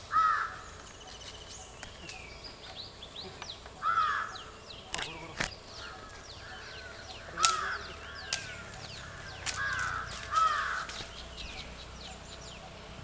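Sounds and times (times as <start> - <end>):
loud bird call: 0.0 - 2.4, 3.1 - 12.9
small birds chirping: 0.0 - 13.0.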